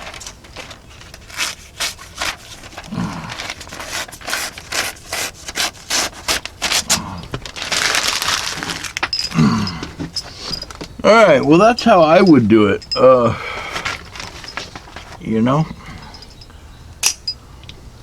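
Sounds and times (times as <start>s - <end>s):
knife scraping on sharpener: 3.6s - 6.5s.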